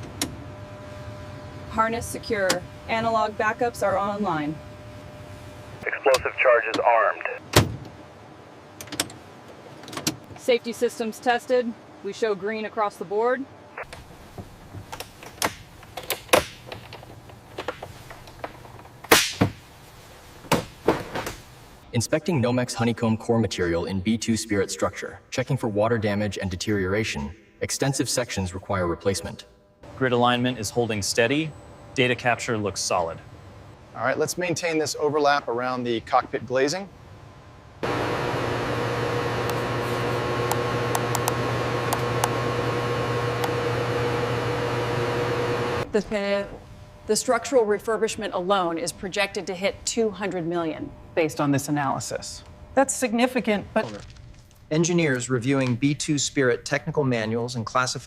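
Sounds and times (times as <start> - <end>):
loud snap with ring-out: 19.1 - 19.5
machine hum and hiss: 29.9 - 47.2.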